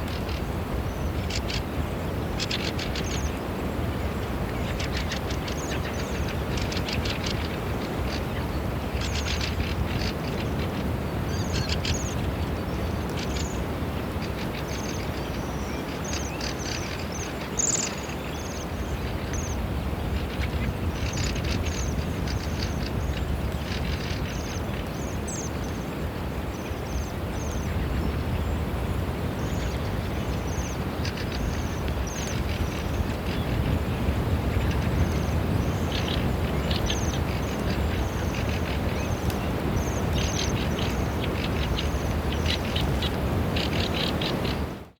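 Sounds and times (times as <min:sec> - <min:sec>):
birds' high trilled calls: 0:04.6 - 0:28.7, 0:29.4 - 0:44.9.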